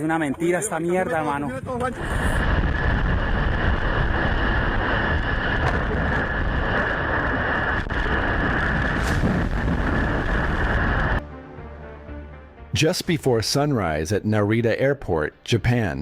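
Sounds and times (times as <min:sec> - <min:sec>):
wind buffeting microphone: 0:01.1 - 0:11.2.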